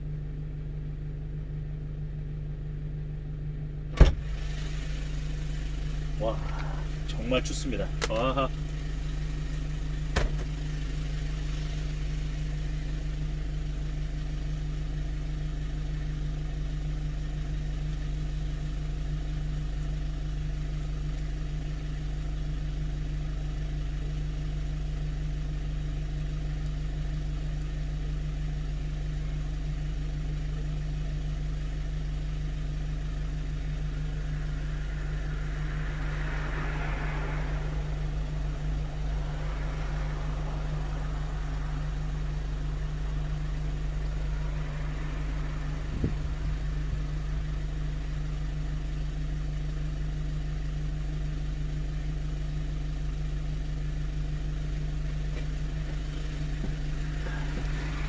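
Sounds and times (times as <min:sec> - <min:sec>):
truck engine idling: 0:03.8 - 0:58.0
hiss: 0:33.1 - 0:48.6, 0:55.8 - 0:58.0.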